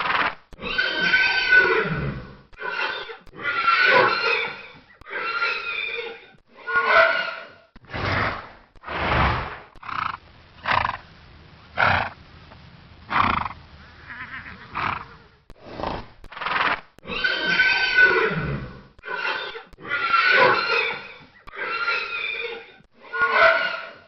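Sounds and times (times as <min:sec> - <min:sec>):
horse snorting: 0:11.8 - 0:12.2, 0:13.1 - 0:21.6
horse whinny: 0:13.1 - 0:15.3.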